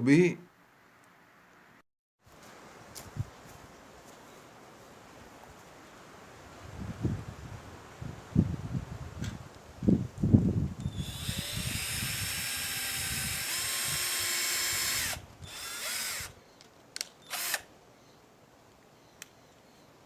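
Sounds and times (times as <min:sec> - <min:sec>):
cordless drill running: 0:10.8 - 0:16.4, 0:17.2 - 0:17.7.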